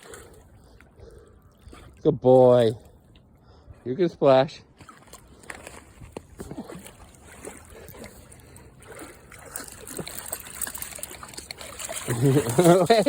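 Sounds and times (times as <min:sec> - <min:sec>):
dogs splashing in water: 0:04.8 - 0:13.0
running water: 0:04.8 - 0:13.0.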